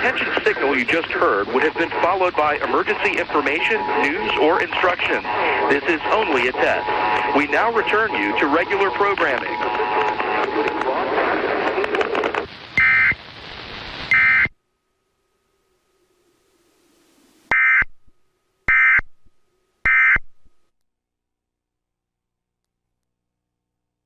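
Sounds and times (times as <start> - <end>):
noisy broadcast audio: 0.0 - 17.9.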